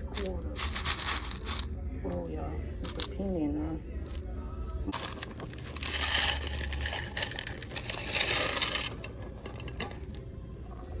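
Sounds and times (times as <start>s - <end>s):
coins clinking and rattling: 0.0s - 1.7s, 2.8s - 3.3s, 4.9s - 10.2s.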